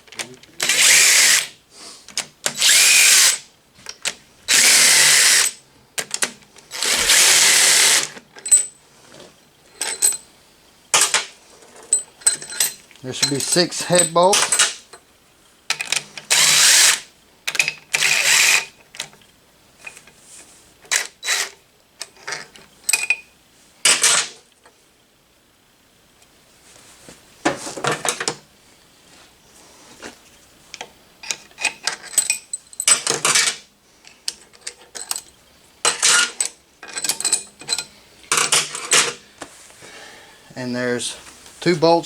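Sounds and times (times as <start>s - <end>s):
impact wrench spinning: 6.7s - 8.1s
metallic clinks of bolts: 8.4s - 8.8s, 9.8s - 10.3s, 11.9s - 15.0s, 22.8s - 23.3s, 31.2s - 33.6s, 34.3s - 39.2s.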